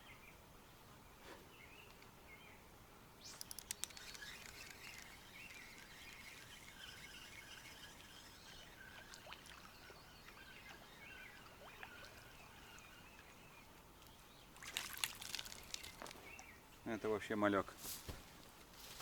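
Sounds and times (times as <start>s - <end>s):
faint bird calls: 3.2s - 14.3s
water splashing: 3.8s - 13.6s, 14.6s - 16.2s.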